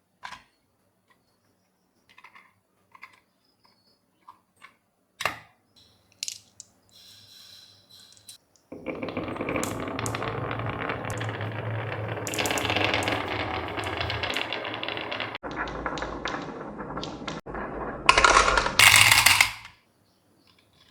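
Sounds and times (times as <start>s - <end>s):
marbles rolling on wooden run: 8.1s - 19.7s.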